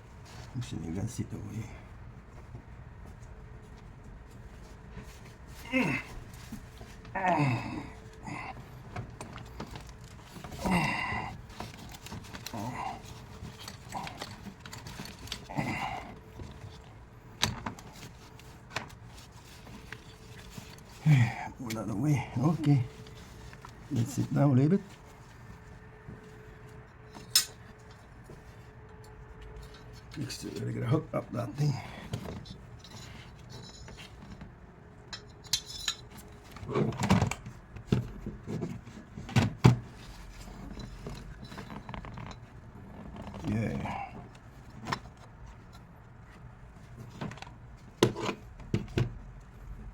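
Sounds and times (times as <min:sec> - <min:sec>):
person grunting: 0:05.6 - 0:06.2, 0:07.2 - 0:08.6, 0:10.6 - 0:11.3, 0:12.5 - 0:13.0, 0:15.5 - 0:16.2
clicks and knocks of parts: 0:11.3 - 0:15.5, 0:26.9 - 0:28.0, 0:32.0 - 0:42.6
metal tools clinking and knocking: 0:27.1 - 0:27.8, 0:32.1 - 0:34.4, 0:35.0 - 0:36.4.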